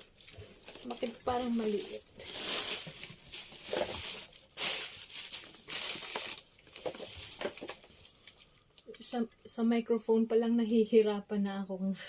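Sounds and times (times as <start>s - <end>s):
plastic crinkling and rustling: 0.0s - 8.9s.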